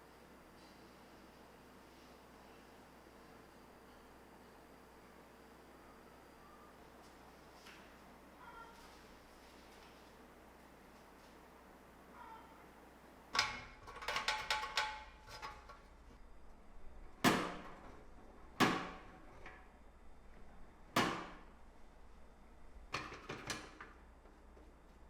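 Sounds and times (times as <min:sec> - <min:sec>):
toy truck metal rattling: 0:13.8 - 0:15.8.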